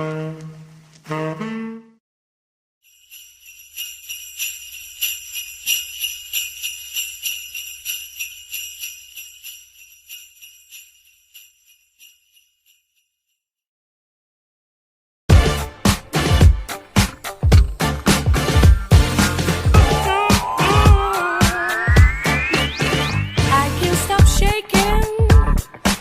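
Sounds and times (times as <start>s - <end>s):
jingle bells shaken: 2.8s - 13.3s, 17.2s - 25.2s.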